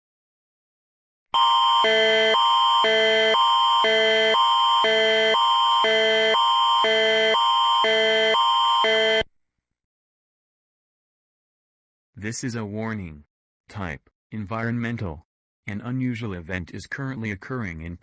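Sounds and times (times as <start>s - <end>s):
electronic emergency alert tone: 1.4s - 9.3s.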